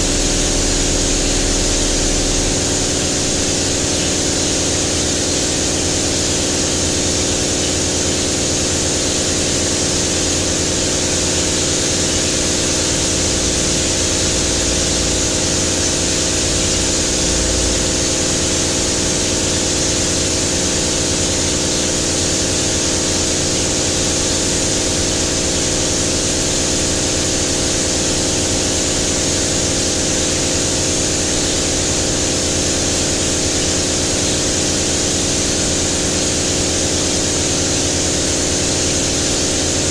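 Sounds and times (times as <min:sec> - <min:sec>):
machine hum: 0:00.0 - 0:05.5, 0:11.1 - 0:22.8.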